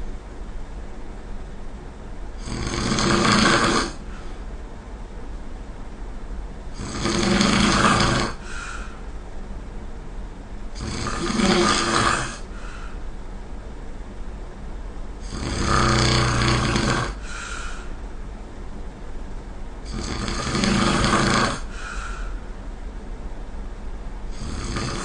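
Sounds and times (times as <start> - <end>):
person snoring: 2.4 - 4.4, 6.8 - 9.0, 10.8 - 13.0, 15.2 - 17.9, 19.9 - 22.3, 24.3 - 25.0
faint breath: 4.0 - 4.5, 8.4 - 9.1, 12.4 - 13.1, 17.2 - 18.0, 21.6 - 22.5.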